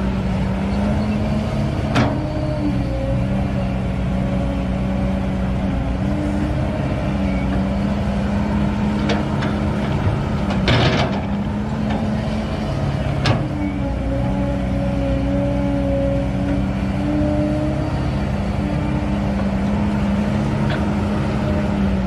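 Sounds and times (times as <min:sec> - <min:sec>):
excavator diesel engine running: 0:00.0 - 0:22.0.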